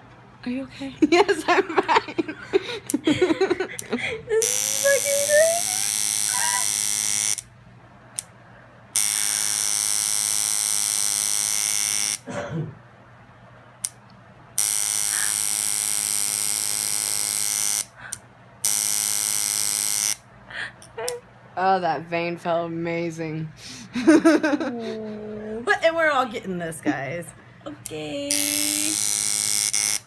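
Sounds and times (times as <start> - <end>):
tattoo machine buzzing: 4.4 - 7.5, 8.9 - 12.2, 14.6 - 18.0, 18.6 - 20.3, 28.2 - 30.0.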